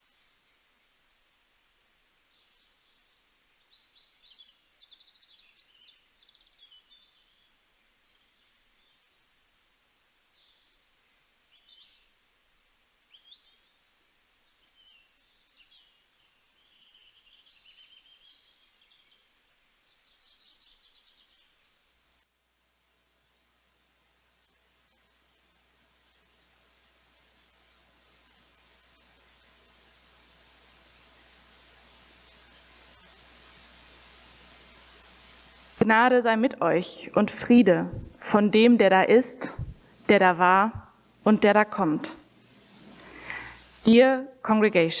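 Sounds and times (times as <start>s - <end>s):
faint songbird song: 0.0s - 22.0s.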